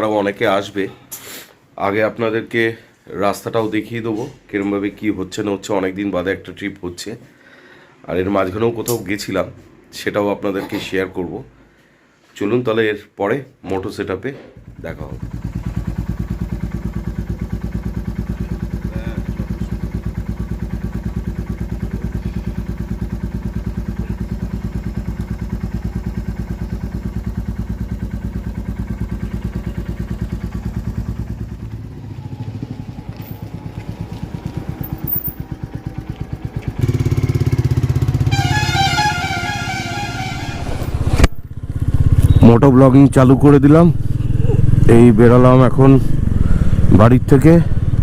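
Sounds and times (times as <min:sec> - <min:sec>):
motorcycle engine idling: 0:14.6 - 0:45.1, 0:47.7 - 0:48.0.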